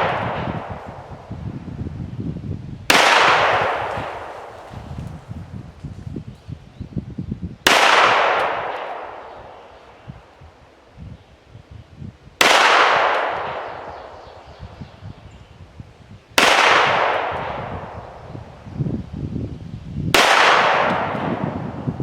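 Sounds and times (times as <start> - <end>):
pistol shots with echo: 0.0 - 1.3, 2.9 - 4.8, 7.6 - 10.0, 12.4 - 14.3, 16.4 - 18.4, 20.2 - 21.8.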